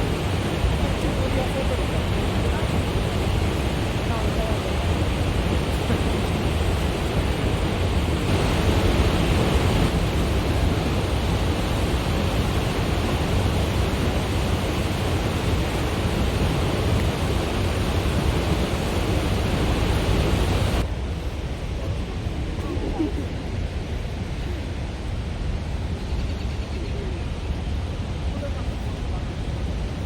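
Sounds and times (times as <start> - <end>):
waterfall rushing: 0.0 - 20.8.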